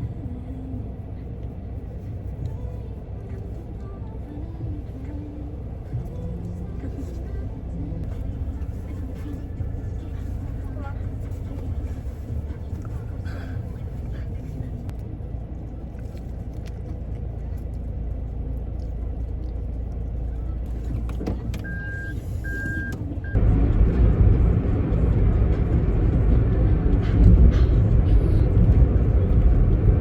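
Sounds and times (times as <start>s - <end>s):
car engine and road rumble: 0.0s - 30.0s
short electronic beeps: 21.6s - 23.4s.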